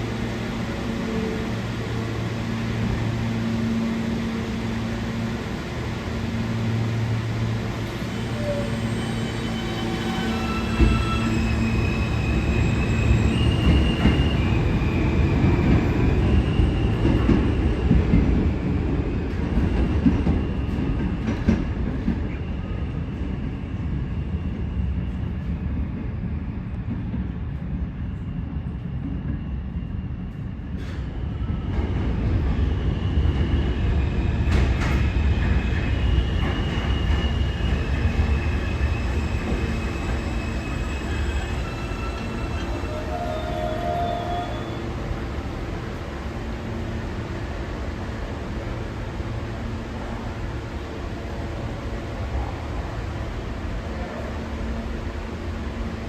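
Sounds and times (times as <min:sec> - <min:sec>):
subway train wheels rumbling: 0:00.0 - 0:56.0
wheel squeals: 0:08.0 - 0:14.7, 0:36.0 - 0:44.9.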